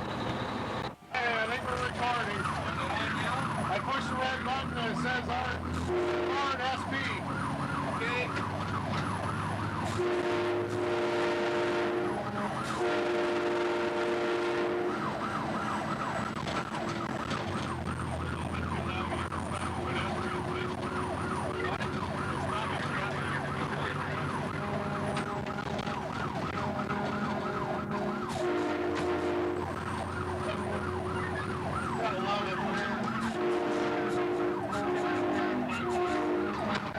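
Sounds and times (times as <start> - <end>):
siren yelping: 1.4 - 36.9
train horn blasts: 5.9 - 6.6, 9.9 - 15.0, 24.5 - 25.6, 26.6 - 29.7, 33.2 - 36.9.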